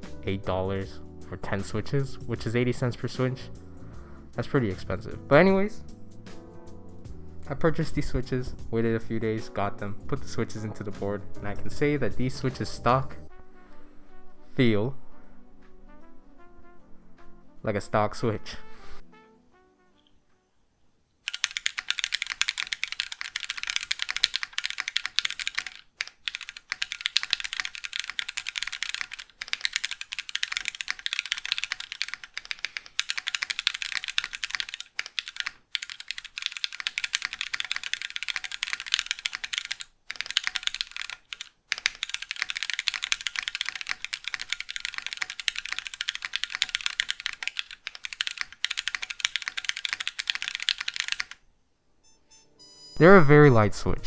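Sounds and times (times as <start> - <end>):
typing on mechanical keyboard: 21.3 - 51.4.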